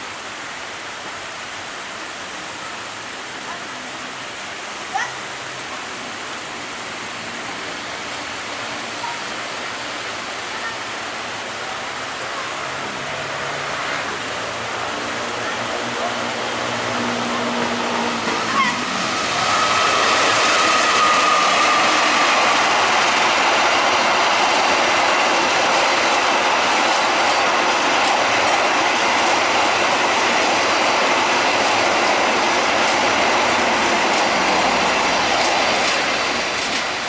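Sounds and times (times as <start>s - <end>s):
train wheels rushing on rails: 0.0s - 37.0s
clicking over rail joints: 32.8s - 37.0s.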